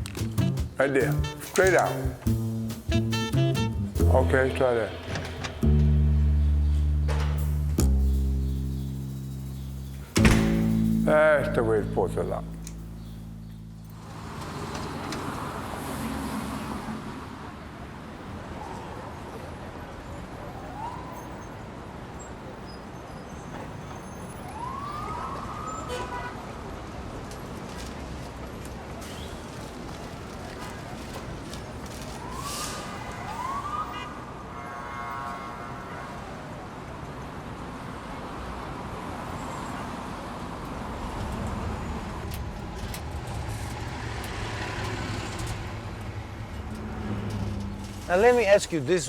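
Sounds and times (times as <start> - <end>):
city traffic noise: 0.0 - 49.0
low engine rumble: 2.2 - 14.6
passing vehicles: 3.8 - 35.4, 36.0 - 49.0.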